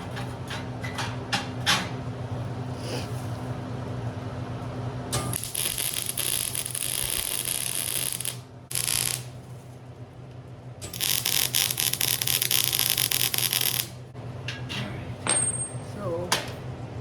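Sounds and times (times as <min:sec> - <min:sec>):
low electrical hum: 0:00.0 - 0:17.0
arc welding crackling: 0:05.3 - 0:09.6, 0:10.8 - 0:14.1.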